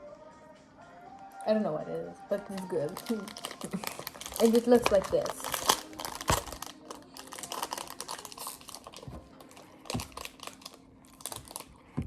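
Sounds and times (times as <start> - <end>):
wrapper crinkling and tearing: 2.5 - 11.8.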